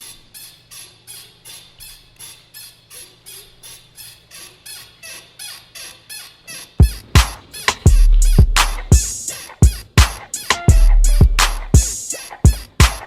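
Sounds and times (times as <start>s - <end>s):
rhythmic creaking squeak: 0.0s - 13.0s.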